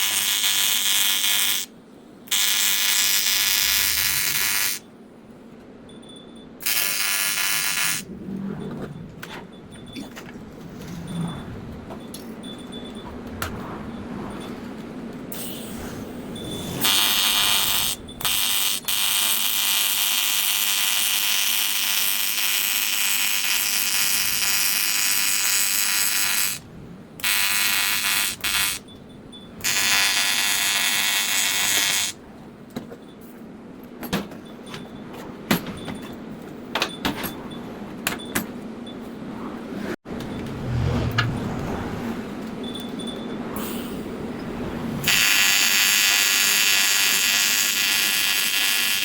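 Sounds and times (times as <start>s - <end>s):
welding arc buzzing: 0.0s - 1.7s, 2.3s - 4.8s, 6.6s - 8.1s, 16.8s - 26.6s, 27.2s - 28.8s, 29.6s - 32.2s, 45.0s - 49.0s.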